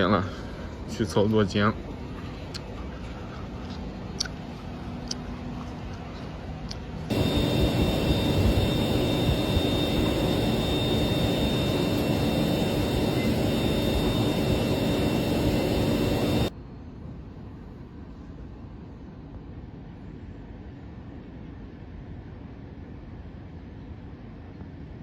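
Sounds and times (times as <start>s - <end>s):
machinery rushing hum: 0.0s - 16.5s
high steady machine whines: 7.0s - 16.5s.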